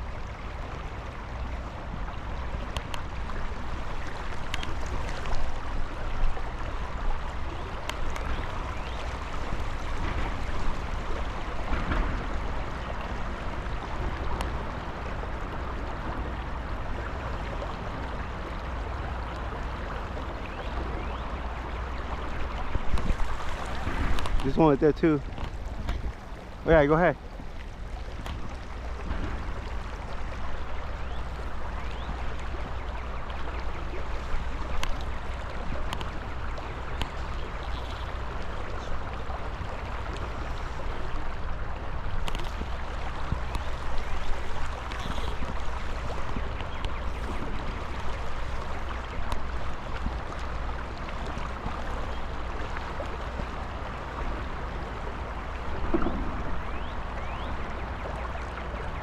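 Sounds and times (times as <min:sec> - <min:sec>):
river water rushing: 0:00.0 - 0:59.0
faint clicks: 0:02.7 - 0:03.1, 0:42.1 - 0:48.1.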